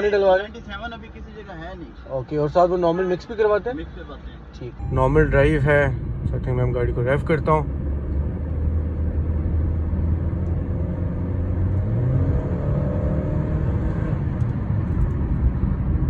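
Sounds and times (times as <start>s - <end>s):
car engine accelerating: 4.8s - 16.0s.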